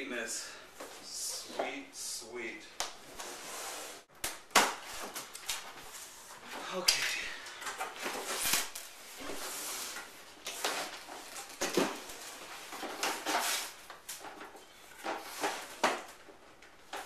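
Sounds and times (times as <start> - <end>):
cardboard and plastic rustling: 7.5 - 17.0.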